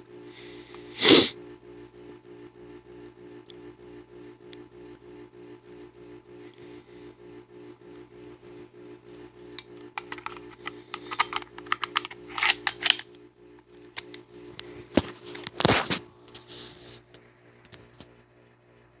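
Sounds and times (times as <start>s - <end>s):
metal pistol parts clicking: 10.0s - 13.0s.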